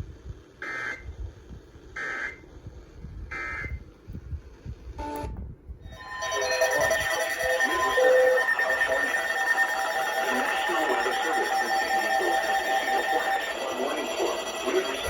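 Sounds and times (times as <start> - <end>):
raspy digital data tones: 5.9 - 15.0.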